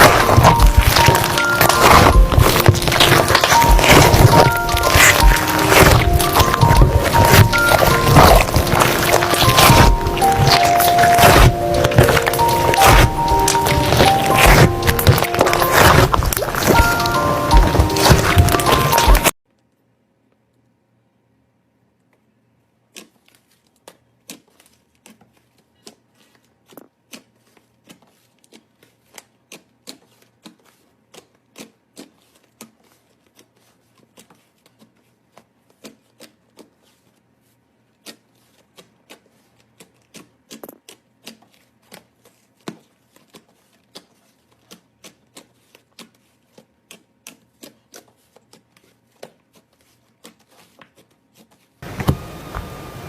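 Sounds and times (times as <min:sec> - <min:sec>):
slime clicking and popping: 0:00.0 - 0:19.3.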